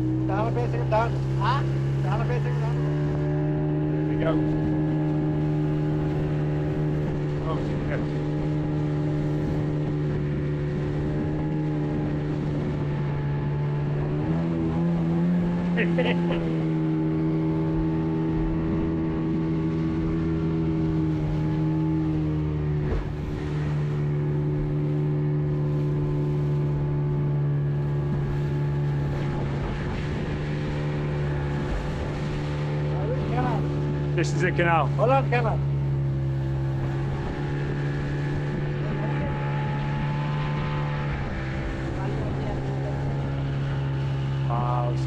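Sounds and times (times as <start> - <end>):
outboard motor drone: 0.0 - 45.0.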